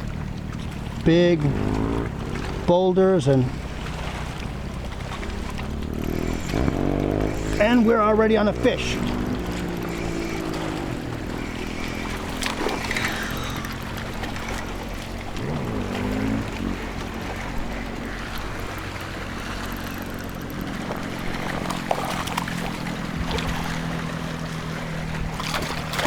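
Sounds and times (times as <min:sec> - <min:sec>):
boat motor humming: 0:00.0 - 0:26.0
water sloshing against hull: 0:00.0 - 0:26.0.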